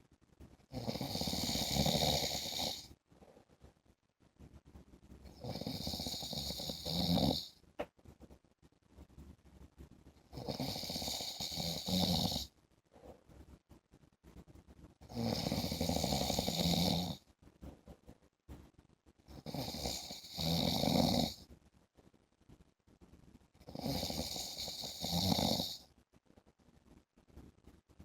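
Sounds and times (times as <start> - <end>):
man snoring: 0.7 - 2.9, 5.4 - 7.5, 10.4 - 12.5, 15.1 - 17.2, 19.4 - 21.4, 23.7 - 25.8.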